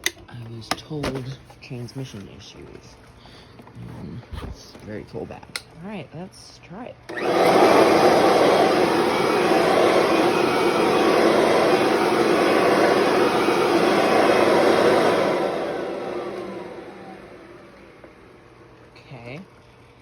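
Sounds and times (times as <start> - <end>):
vacuum cleaner motor running: 7.1 - 20.0.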